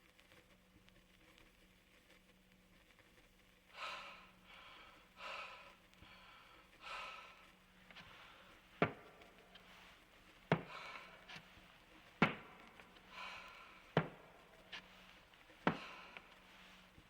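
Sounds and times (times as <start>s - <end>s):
slow heavy breathing: 3.7s - 17.0s.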